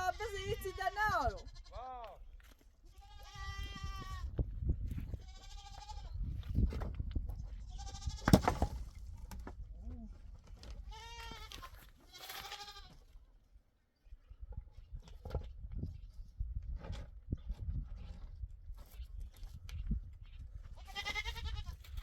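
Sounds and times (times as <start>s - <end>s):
livestock bleating: 0.0s - 1.9s, 2.9s - 4.2s, 5.2s - 6.2s, 10.9s - 13.0s, 20.8s - 21.8s.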